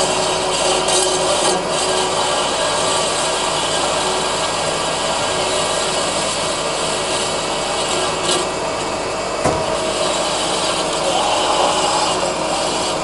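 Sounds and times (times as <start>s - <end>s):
bandsaw cutting wood: 0.0s - 8.9s, 9.5s - 13.0s.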